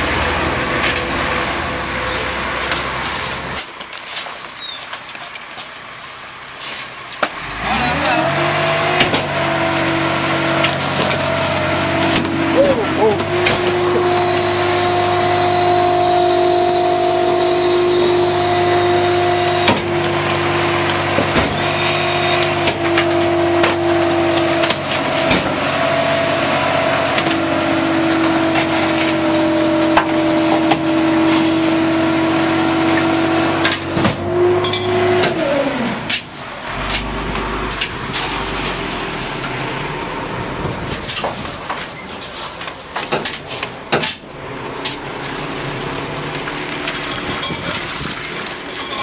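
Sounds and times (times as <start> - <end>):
garbage truck packer drone: 6.5 - 49.0
metal clanks and knocks: 46.8 - 49.0.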